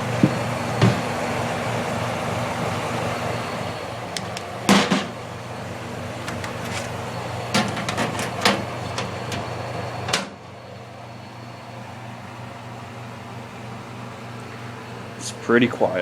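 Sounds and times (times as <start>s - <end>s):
dehumidifier humming: 0.0s - 16.0s
handling knocks and clunks: 7.5s - 9.5s.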